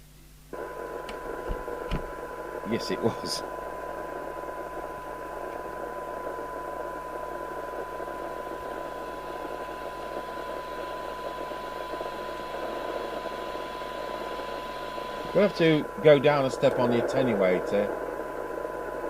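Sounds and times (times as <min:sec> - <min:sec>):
radio hiss: 0:00.5 - 0:19.0
steady test tone: 0:07.2 - 0:18.0.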